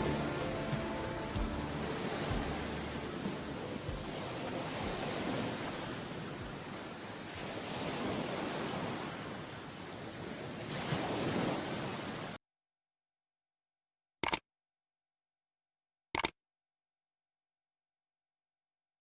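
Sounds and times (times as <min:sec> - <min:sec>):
ocean waves washing in: 0:00.0 - 0:12.4.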